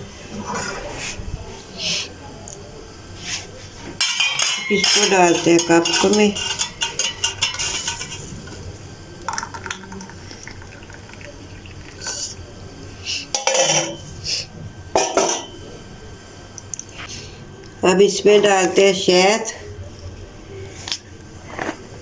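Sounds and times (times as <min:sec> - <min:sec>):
pot and crockery clinking: 0:04.0 - 0:12.4, 0:13.3 - 0:14.2, 0:14.9 - 0:15.7
tea pouring into a cup: 0:09.2 - 0:12.5.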